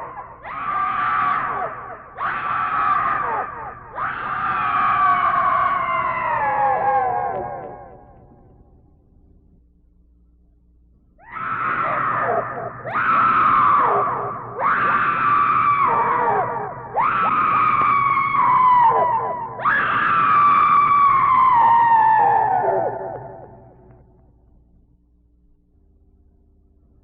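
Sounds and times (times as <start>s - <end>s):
long screams dropping in pitch: 11.2s - 23.5s.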